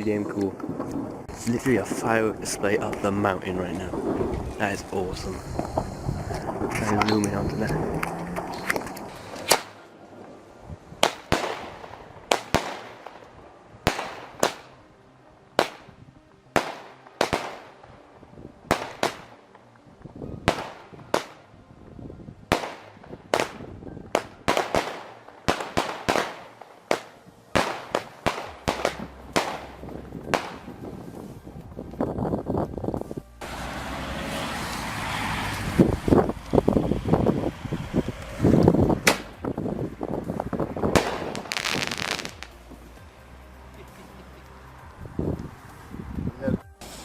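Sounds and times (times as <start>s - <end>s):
fireworks exploding: 11.0s - 14.8s, 16.6s - 17.8s, 18.7s - 19.4s, 20.4s - 21.4s, 22.5s - 31.1s, 40.8s - 42.6s.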